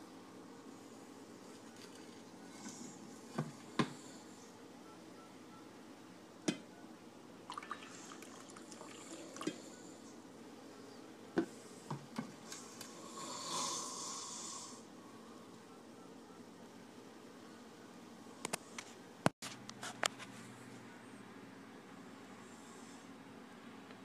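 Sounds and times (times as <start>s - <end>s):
man snoring: 12.9s - 14.9s.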